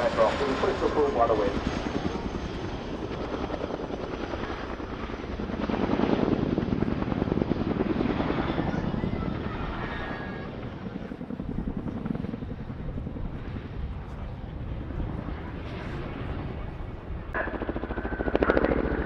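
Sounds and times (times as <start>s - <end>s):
helicopter rotor blade slap: 17.3s - 19.0s.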